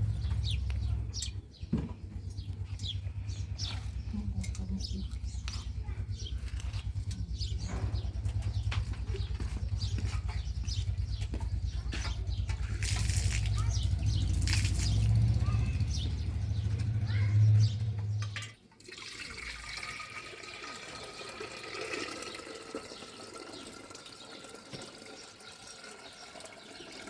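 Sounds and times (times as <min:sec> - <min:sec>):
loud low rumble: 0:00.0 - 0:18.2
running water: 0:18.8 - 0:27.0.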